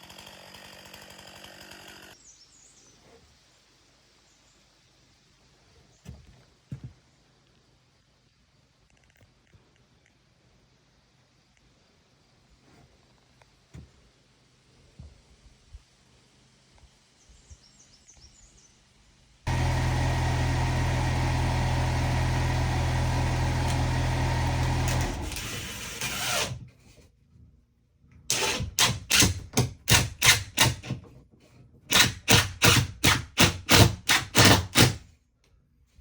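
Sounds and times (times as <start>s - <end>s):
power tool motor running: 0.0s - 2.2s, 19.5s - 26.6s.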